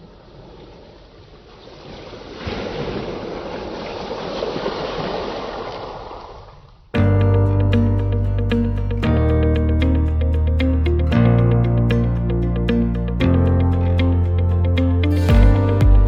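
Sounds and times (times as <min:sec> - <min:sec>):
ocean waves washing in: 0:00.0 - 0:06.9
guitar music: 0:07.0 - 0:16.0.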